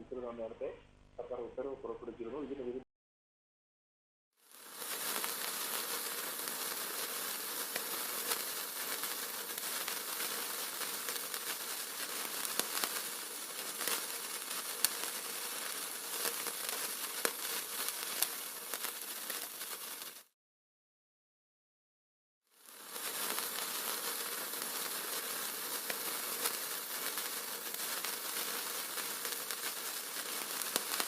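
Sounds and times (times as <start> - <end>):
dense crackling and hiss: 4.4 - 20.4, 22.5 - 31.0
sharp pops: 4.8 - 20.3, 23.0 - 31.0.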